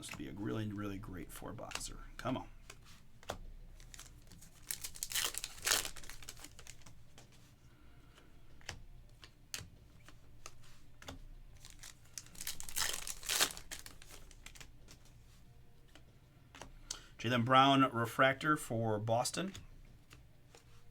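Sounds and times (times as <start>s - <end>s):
foil wrapper crinkling and tearing: 3.8s - 6.9s, 11.6s - 14.7s.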